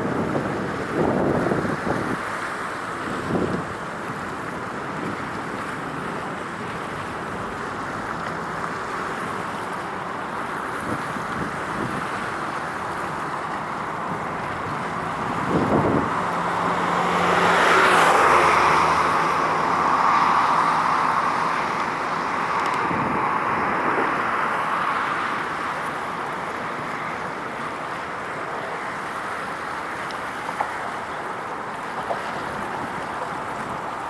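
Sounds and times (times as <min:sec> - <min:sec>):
distant traffic: 0:00.0 - 0:34.0
wind: 0:00.0 - 0:34.0
vehicle passing: 0:13.7 - 0:26.2.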